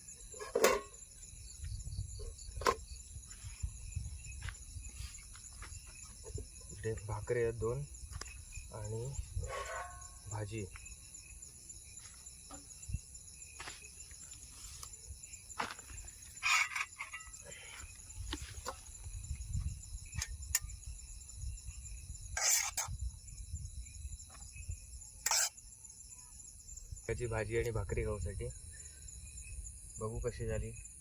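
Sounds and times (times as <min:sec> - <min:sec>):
night insects chirring: 0:00.0 - 0:31.0.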